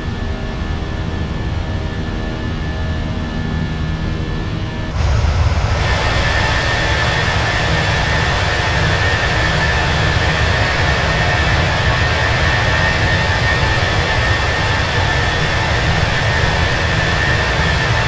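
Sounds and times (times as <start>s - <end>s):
jet engines roaring: 3.8s - 18.0s.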